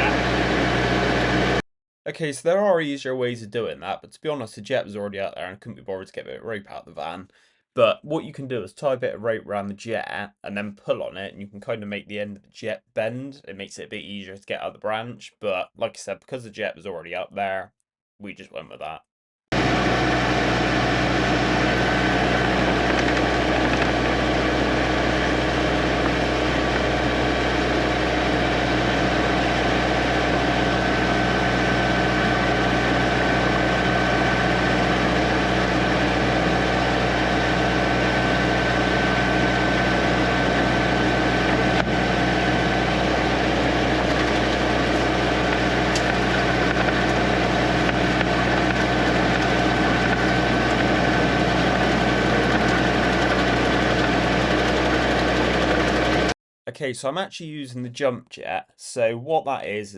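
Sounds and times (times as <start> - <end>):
drain jetter engine and pump droning: 0.0 - 1.6, 19.6 - 56.3.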